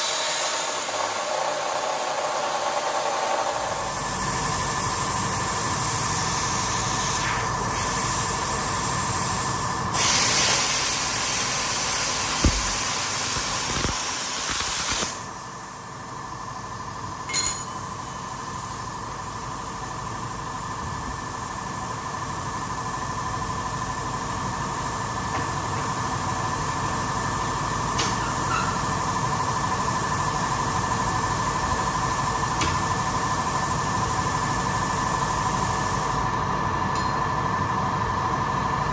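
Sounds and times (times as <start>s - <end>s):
machine hum with whine: 0.0s - 38.9s
cutting torch hissing: 3.6s - 16.3s, 24.1s - 36.3s.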